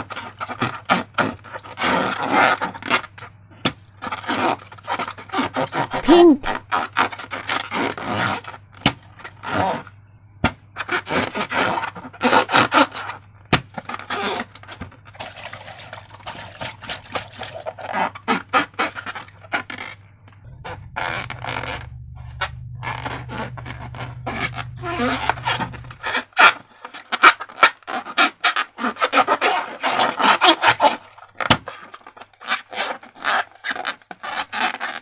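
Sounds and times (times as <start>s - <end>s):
low steady hum: 2.6s - 26.9s.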